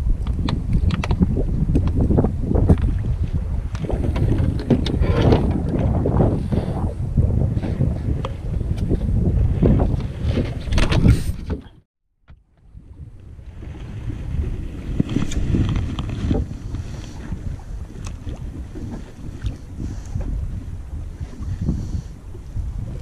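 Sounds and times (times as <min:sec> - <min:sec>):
wind buffeting microphone: 0:00.0 - 0:11.8, 0:12.4 - 0:23.0.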